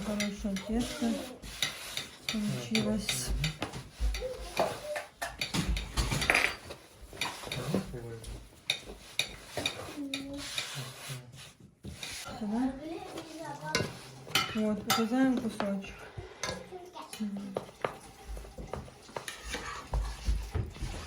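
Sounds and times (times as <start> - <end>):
dough kneading thumps: 0.0 - 10.8, 17.5 - 21.0
dishes and cutlery clinking: 0.0 - 10.9, 11.8 - 21.0.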